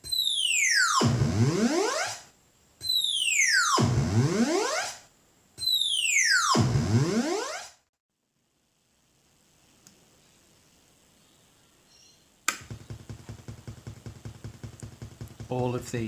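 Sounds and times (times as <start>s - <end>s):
synthesizer tone swooping in pitch: 0.1s - 7.8s.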